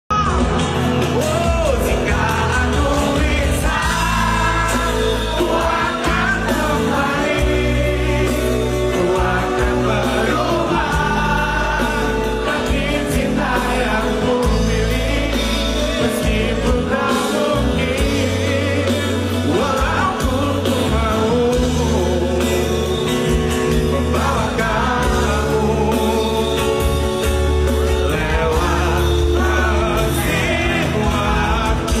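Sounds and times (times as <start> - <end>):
song with singing over bass and beat: 0.1 - 32.0.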